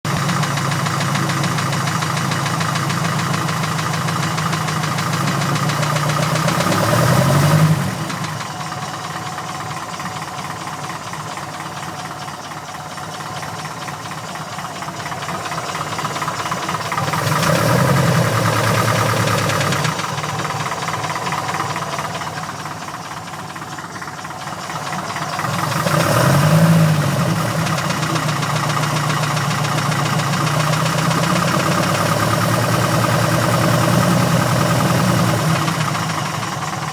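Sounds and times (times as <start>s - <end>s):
engine revving: 5.0s - 8.4s, 16.8s - 22.4s, 25.2s - 36.9s.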